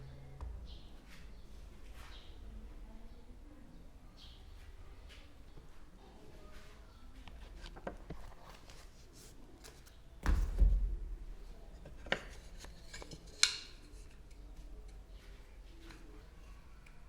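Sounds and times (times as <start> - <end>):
heavy wooden thump: 10.2 - 11.2.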